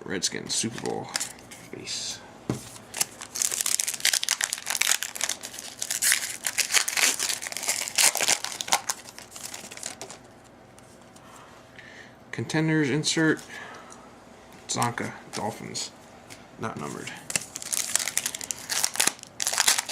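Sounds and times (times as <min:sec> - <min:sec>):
card pack wrapper crinkling: 0:02.7 - 0:10.3, 0:17.2 - 0:19.9.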